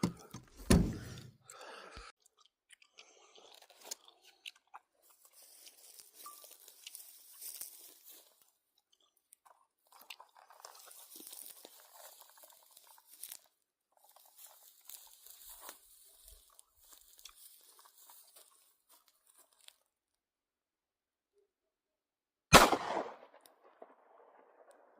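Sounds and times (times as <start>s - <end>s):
crunching and rustling handling: 3.6s - 19.9s.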